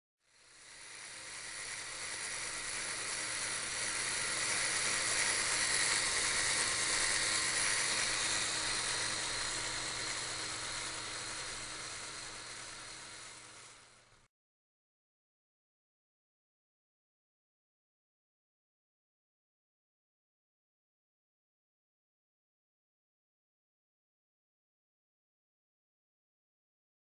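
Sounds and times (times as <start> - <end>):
steady hissing whir: 0.2 - 14.3.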